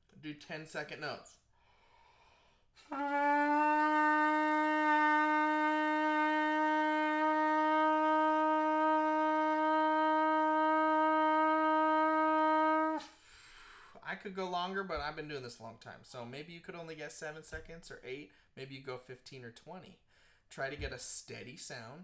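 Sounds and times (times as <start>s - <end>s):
trumpet mouthpiece long note: 2.8s - 13.2s.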